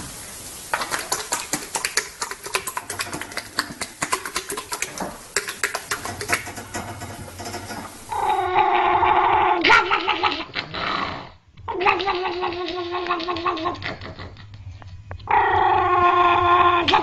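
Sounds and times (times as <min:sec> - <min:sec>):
rapid irregular clicking: 0:00.7 - 0:08.4.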